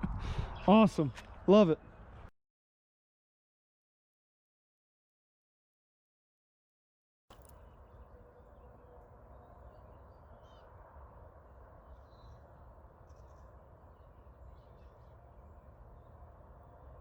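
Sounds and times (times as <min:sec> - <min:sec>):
faint bird chirps: 0:07.3 - 0:17.0.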